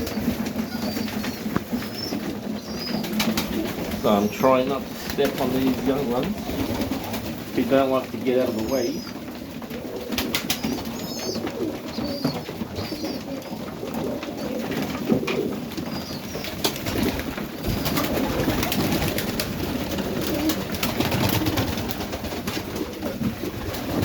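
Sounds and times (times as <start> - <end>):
pigeons cooing: 0.0 - 24.0.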